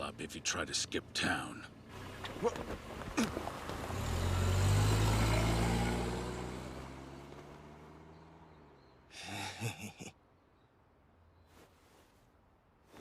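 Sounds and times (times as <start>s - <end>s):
car engine driving off: 1.9s - 9.0s.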